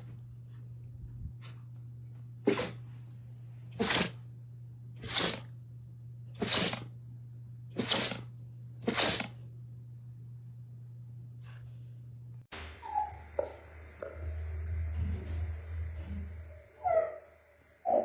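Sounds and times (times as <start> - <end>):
low hum: 0.0 - 18.0
pet sneezing: 2.4 - 2.9, 3.7 - 4.2, 5.0 - 5.5, 6.4 - 6.9, 7.7 - 9.4.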